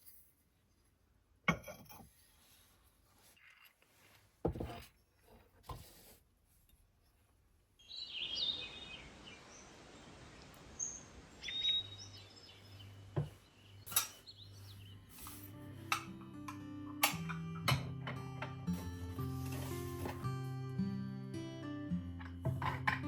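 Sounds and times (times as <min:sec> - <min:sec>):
outdoor background hiss: 0:07.6 - 0:17.5
small birds chirping: 0:07.8 - 0:15.8.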